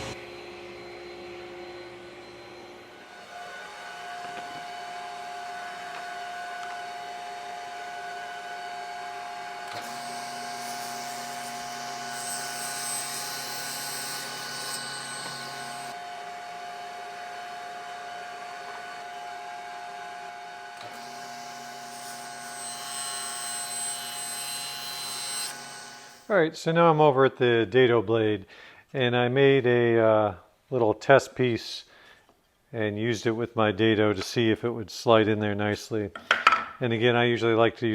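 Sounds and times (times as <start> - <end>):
power tool motor whining: 9.6 - 16.1, 20.8 - 26.3.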